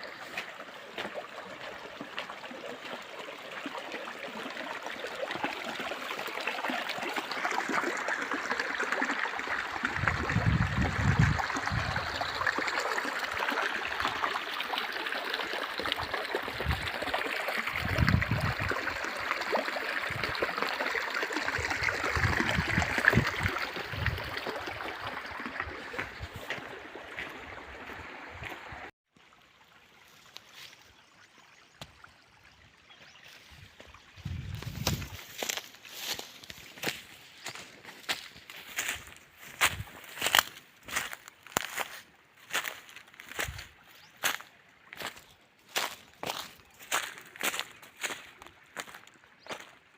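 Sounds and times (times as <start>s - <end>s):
stream water rushing: 0.0s - 30.9s.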